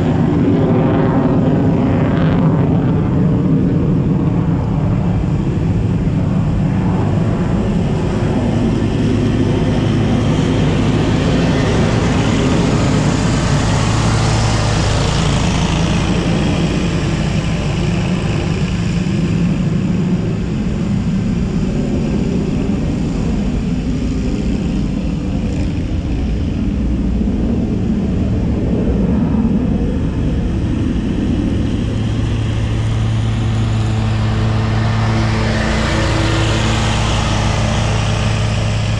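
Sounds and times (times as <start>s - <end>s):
jet aircraft passing overhead: 0.0s - 38.9s
lawn mower engine running: 7.8s - 19.6s, 30.4s - 38.9s.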